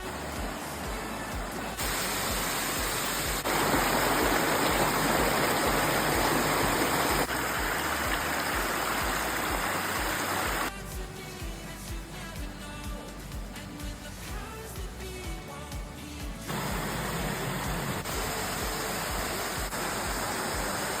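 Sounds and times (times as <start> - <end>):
waterfall rushing: 0.1 - 10.7, 16.5 - 21.0.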